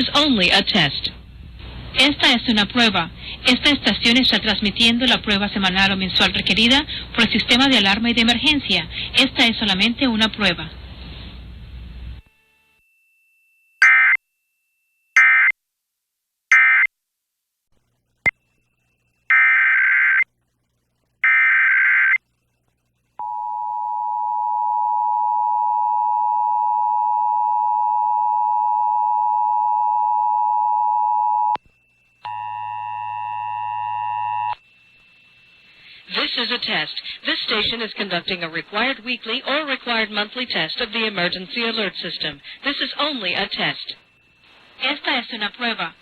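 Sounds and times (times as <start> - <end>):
buzzing multi-tone signal: 17.9 - 23.4, 31.5 - 36.4.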